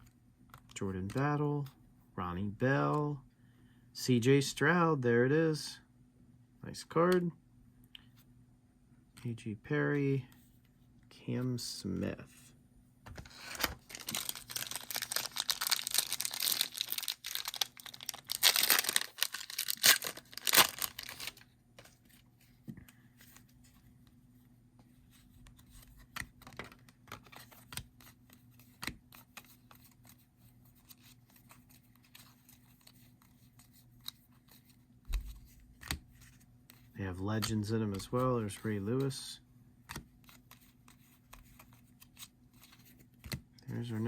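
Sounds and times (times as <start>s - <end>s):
foil wrapper tearing and crinkling: 13.5s - 21.4s.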